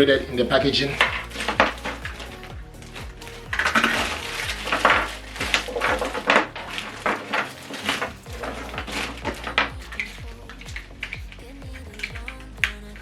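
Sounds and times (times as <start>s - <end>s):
background music with bass beat: 0.0s - 13.0s
packaging rustling and clattering: 3.4s - 10.3s.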